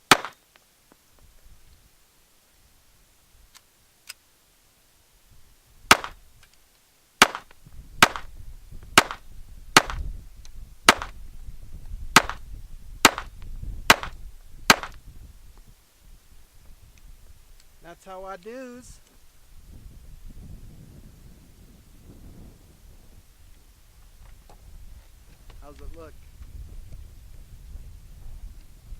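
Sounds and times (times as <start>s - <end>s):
faint gunshots: 0.1s - 0.4s, 5.9s - 6.2s, 7.2s - 8.3s, 9.0s - 9.2s, 10.9s - 11.2s, 13.9s - 14.1s, 14.7s - 15.0s
revolver gunshots: 0.1s - 0.4s, 5.9s - 6.2s, 7.2s - 8.3s, 9.0s - 9.2s, 10.9s - 11.2s, 13.0s - 13.3s, 13.9s - 15.0s.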